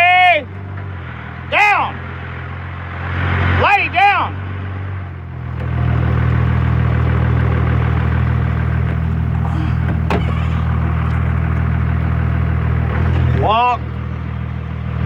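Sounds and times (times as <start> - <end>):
truck engine idling: 0.0 - 15.0.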